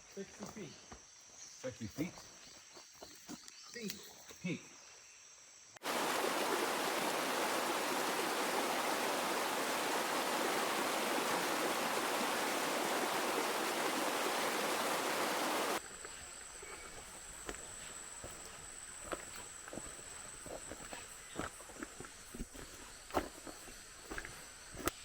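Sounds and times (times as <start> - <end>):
rushing water: 5.8 - 15.8.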